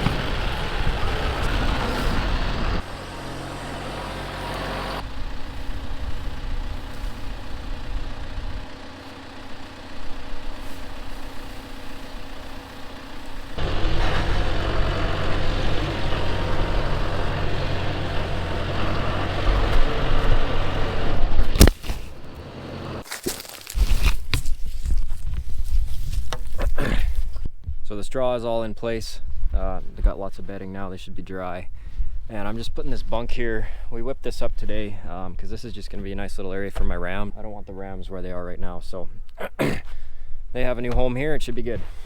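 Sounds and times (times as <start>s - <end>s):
tractor engine running: 0.0s - 27.3s.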